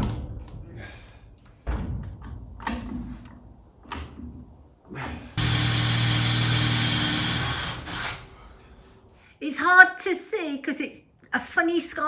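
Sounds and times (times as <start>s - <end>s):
power tool running: 5.4s - 8.4s.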